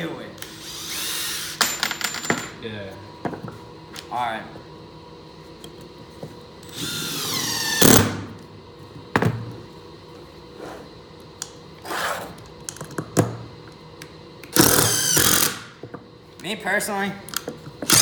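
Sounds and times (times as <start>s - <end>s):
impact driver whine: 0.4s - 2.0s, 6.6s - 8.3s, 14.5s - 15.8s.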